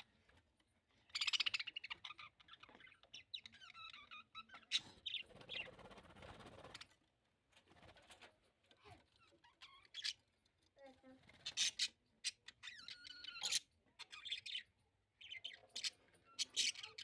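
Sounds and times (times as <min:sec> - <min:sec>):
budgerigars chirping and chattering: 0:00.9 - 0:07.0, 0:09.2 - 0:10.5, 0:11.3 - 0:17.0.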